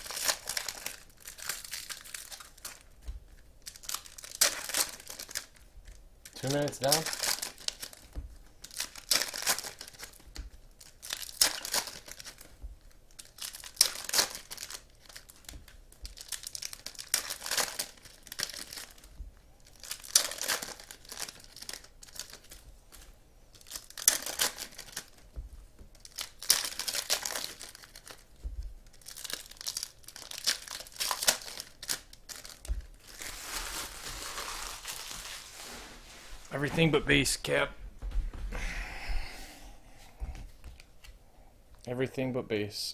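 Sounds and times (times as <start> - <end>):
card packs being torn open: 0.0 - 2.8, 3.6 - 5.6, 6.2 - 12.5, 13.1 - 22.6, 23.5 - 25.2, 25.9 - 35.8
wrappers crinkling: 0.0 - 36.9.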